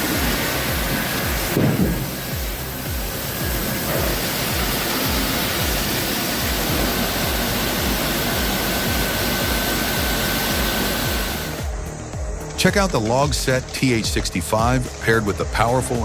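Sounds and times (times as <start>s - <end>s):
continuous rushing noise: 0.0s - 16.0s
music with low beat: 0.0s - 16.0s.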